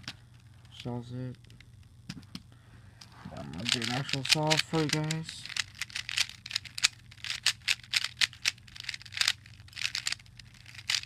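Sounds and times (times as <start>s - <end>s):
plastic puzzle cube clicking: 3.5s - 11.0s.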